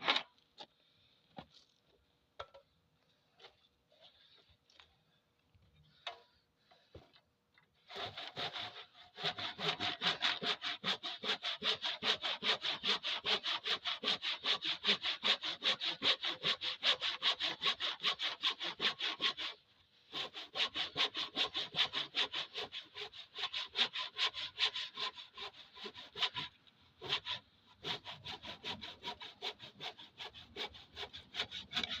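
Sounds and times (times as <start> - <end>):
hand saw cutting wood: 7.8 - 32.0.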